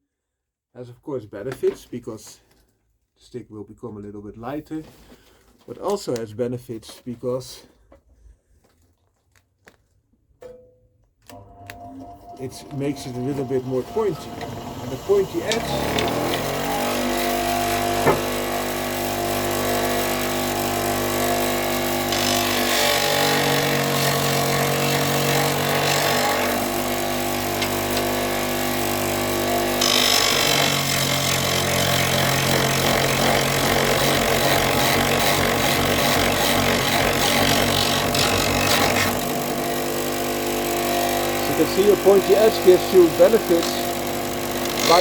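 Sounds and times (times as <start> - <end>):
power tool motor running: 11.8 - 45.0
harsh grinding of wood: 12.5 - 45.0.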